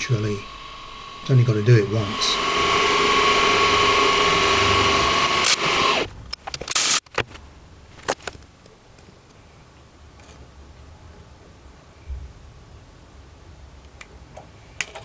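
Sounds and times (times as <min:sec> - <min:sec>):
milling machine whining: 0:00.0 - 0:06.1.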